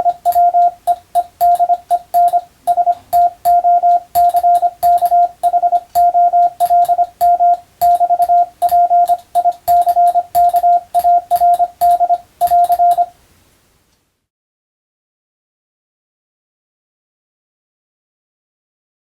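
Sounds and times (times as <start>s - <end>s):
morse code beeps: 0.0s - 13.1s
telegraph key clicks: 0.0s - 13.1s.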